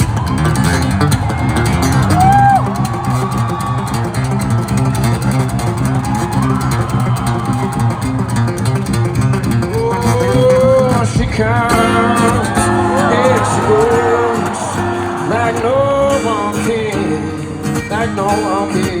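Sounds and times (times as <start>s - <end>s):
guitar bending notes: 0.0s - 18.8s.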